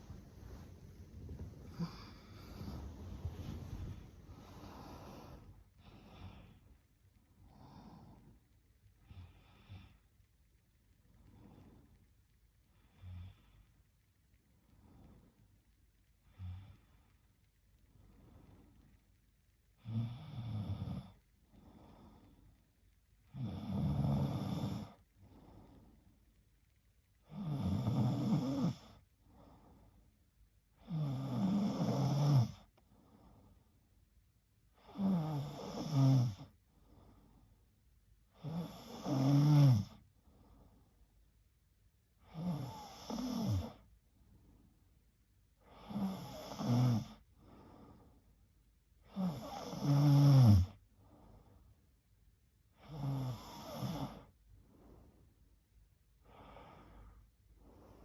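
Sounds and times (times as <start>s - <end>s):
faint breaths: 0.0s - 31.4s, 32.2s - 49.9s, 50.6s - 58.0s
woman snoring: 0.1s - 5.5s, 23.3s - 25.0s, 27.3s - 28.9s, 30.8s - 32.7s, 34.8s - 36.5s, 38.4s - 40.0s, 42.2s - 43.8s, 45.6s - 47.2s, 49.0s - 50.8s, 52.8s - 54.3s.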